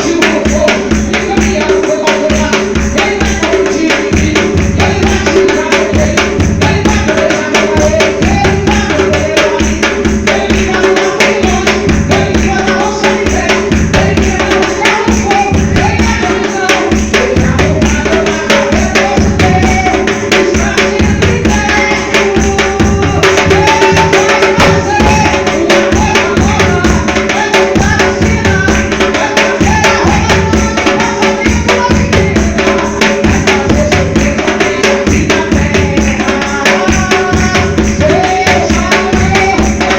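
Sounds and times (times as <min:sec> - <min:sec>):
gospel music with hand drums: 0:00.0 - 0:39.9
deep bass drum: 0:13.4 - 0:14.5.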